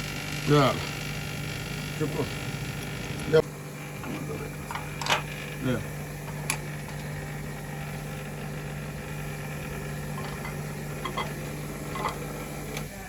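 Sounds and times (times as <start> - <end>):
steady mechanical hum: 0.0 - 13.0.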